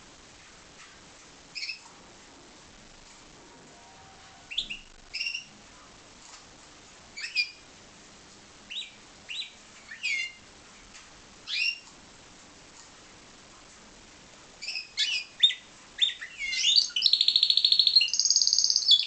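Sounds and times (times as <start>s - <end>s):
canary chirping: 1.5s - 1.9s, 4.0s - 5.6s, 7.1s - 7.7s, 8.7s - 10.5s, 11.4s - 11.9s, 14.6s - 19.0s.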